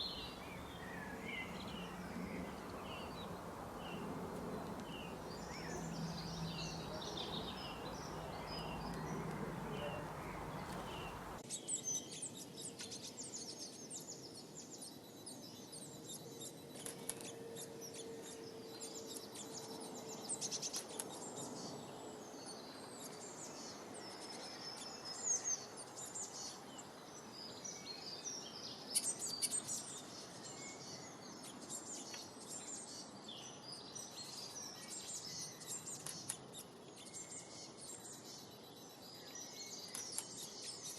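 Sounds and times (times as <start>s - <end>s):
low noisy hum: 0.0s - 11.4s
small birds chirping: 0.0s - 40.9s.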